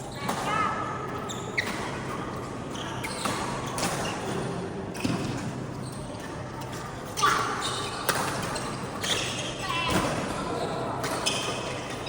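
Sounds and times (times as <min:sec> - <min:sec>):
shoe squeaks on court floor: 0:01.2 - 0:02.0, 0:02.7 - 0:04.4, 0:07.6 - 0:09.6.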